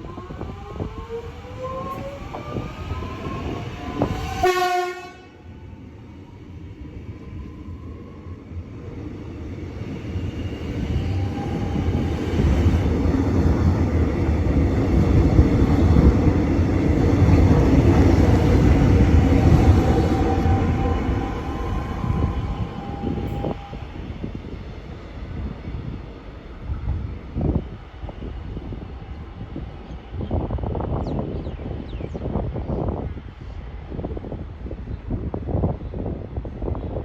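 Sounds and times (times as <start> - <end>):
train rumble: 0.0 - 37.0
train horn blast: 4.3 - 5.4.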